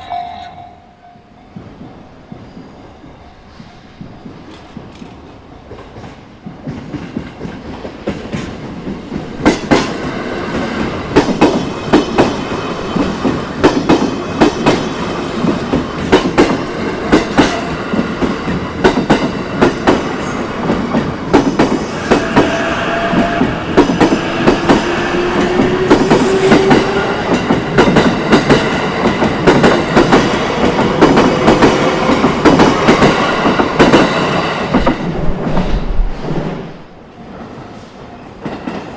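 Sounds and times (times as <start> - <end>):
train rumble: 0.0 - 38.9
train wheels clacking over rail joints: 1.5 - 35.7.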